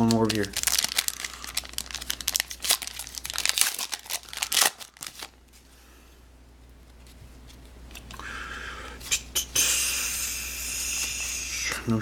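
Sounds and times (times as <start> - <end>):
plastic packaging crinkling: 0.0 - 5.6.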